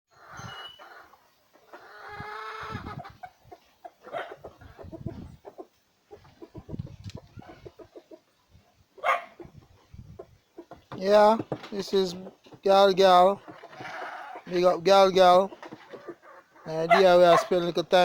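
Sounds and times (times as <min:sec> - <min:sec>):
farmyard animal calls: 0:00.1 - 0:18.0
knocks and thumps: 0:10.2 - 0:14.0.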